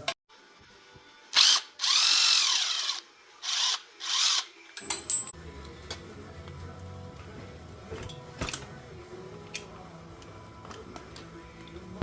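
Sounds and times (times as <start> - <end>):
power drill running: 1.4 - 4.5.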